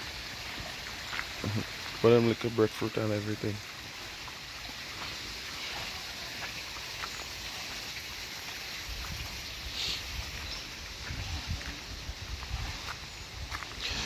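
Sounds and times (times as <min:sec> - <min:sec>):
wind buffeting microphone: 0:10.0 - 0:13.7.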